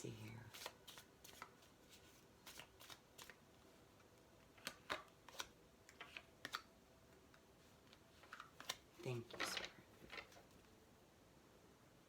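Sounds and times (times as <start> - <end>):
playing cards being shuffled: 0.5 - 3.4, 4.5 - 6.7, 7.8 - 10.6.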